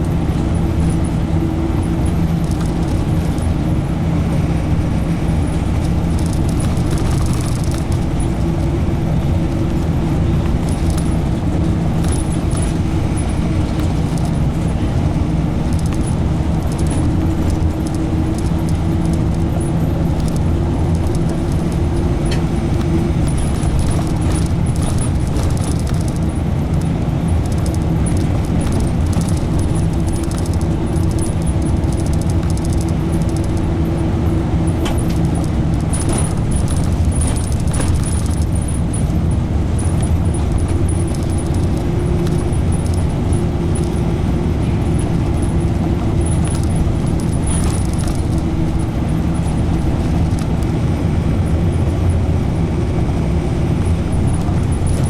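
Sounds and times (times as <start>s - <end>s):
bus engine and road drone: 0.0s - 55.0s
rattles and clicks of fittings: 5.8s - 8.7s, 9.7s - 14.8s, 15.6s - 33.8s, 34.6s - 44.0s, 45.0s - 50.7s.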